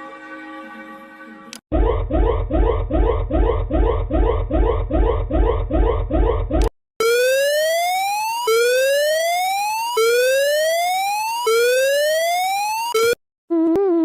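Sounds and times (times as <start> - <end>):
pulsing alarm tone: 1.7 - 13.2
warbling alarm tone: 1.7 - 13.2.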